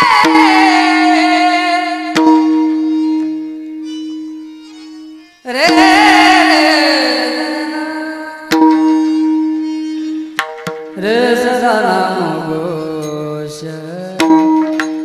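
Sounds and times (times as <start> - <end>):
drum or cymbal strokes: 0.0 - 7.8
steady drone: 0.0 - 12.8.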